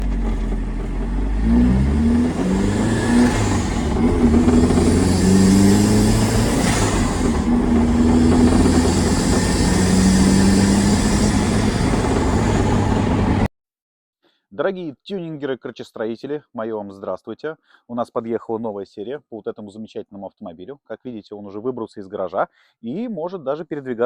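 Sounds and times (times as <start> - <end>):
car engine revving: 0.0 - 13.5
high turbo whistle: 1.4 - 13.5.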